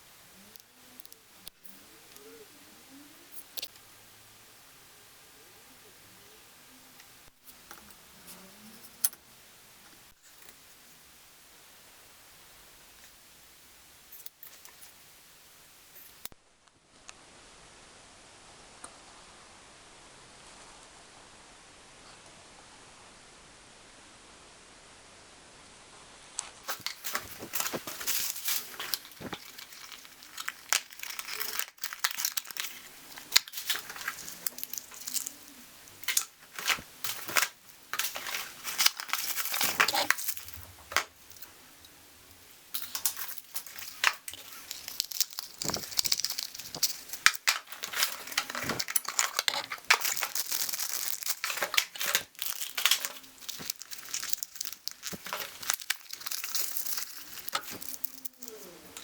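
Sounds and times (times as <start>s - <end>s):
rustling: 26.5s - 59.0s
tools clicking and clinking: 26.7s - 35.4s, 36.0s - 41.5s, 42.8s - 59.0s.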